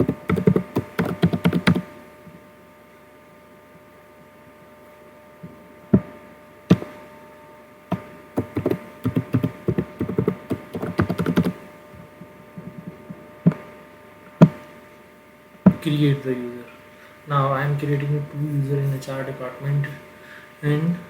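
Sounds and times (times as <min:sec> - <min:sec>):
typing on keyboard: 0:00.0 - 0:01.8, 0:08.4 - 0:11.6
electrical hum: 0:00.0 - 0:21.0.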